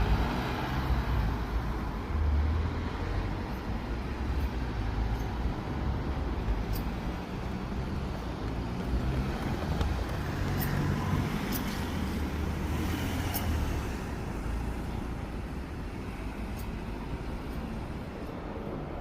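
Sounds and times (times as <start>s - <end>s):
traffic rumble: 0.0s - 19.0s.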